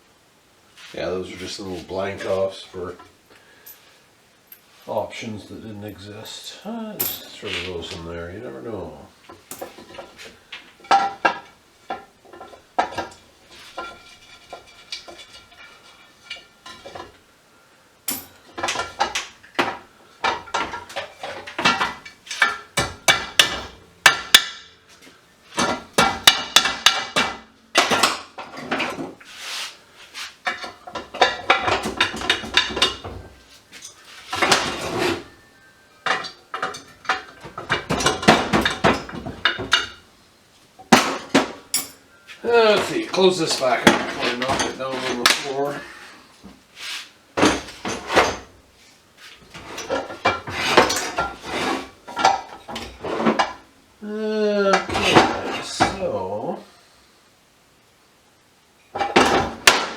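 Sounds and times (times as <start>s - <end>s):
small metal parts clinking: 7.0s - 7.7s, 18.1s - 19.3s.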